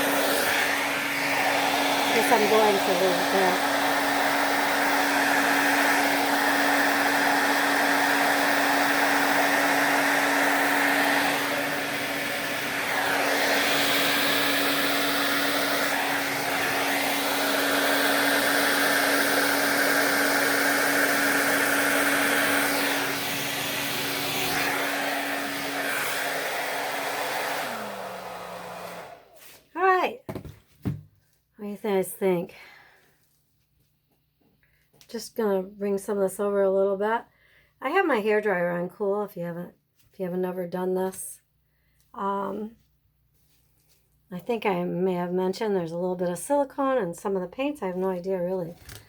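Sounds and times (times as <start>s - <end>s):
hair dryer winding down: 0.0s - 29.5s
hair dryer blowing air: 0.0s - 30.5s.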